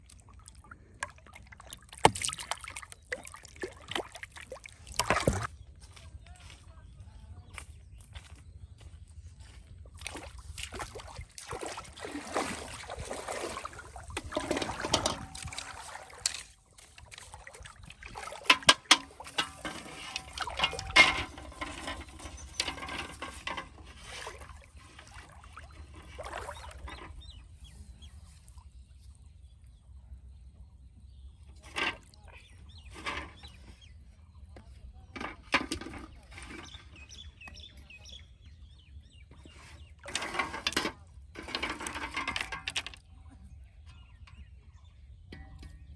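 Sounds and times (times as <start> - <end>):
pond water splashing: 0.0 - 6.0, 9.9 - 27.7, 39.4 - 43.2.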